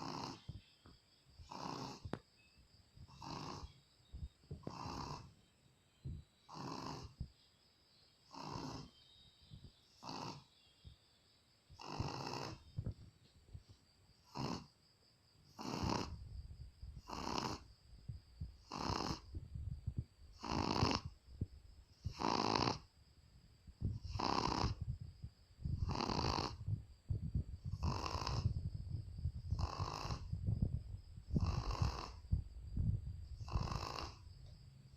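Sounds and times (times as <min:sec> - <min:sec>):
dog snoring: 0:00.0 - 0:00.6, 0:01.4 - 0:02.2, 0:03.1 - 0:03.7, 0:04.6 - 0:05.3, 0:06.5 - 0:07.2, 0:08.3 - 0:09.0, 0:10.0 - 0:10.5, 0:11.8 - 0:12.7, 0:14.2 - 0:14.8, 0:15.5 - 0:16.2, 0:17.0 - 0:17.7, 0:18.6 - 0:19.4, 0:20.3 - 0:21.2, 0:22.0 - 0:22.9, 0:23.8 - 0:24.9, 0:25.7 - 0:26.7, 0:27.7 - 0:28.6, 0:29.5 - 0:30.5, 0:31.3 - 0:32.4, 0:33.4 - 0:34.3.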